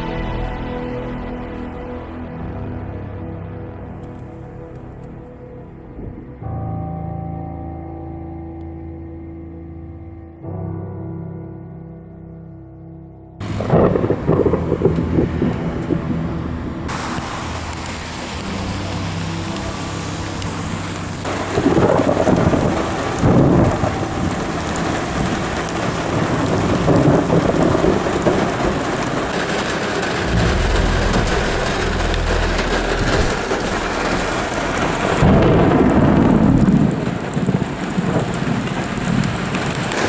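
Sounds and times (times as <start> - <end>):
heavy rain on a car: 13.4 - 40.0
thunder rumbling: 13.4 - 40.0.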